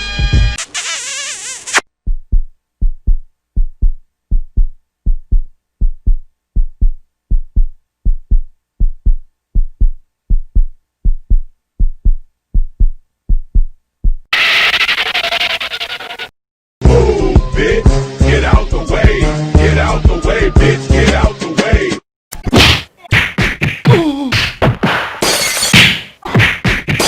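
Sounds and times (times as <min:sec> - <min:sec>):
heartbeat double thump: 0:02.0 - 0:14.3.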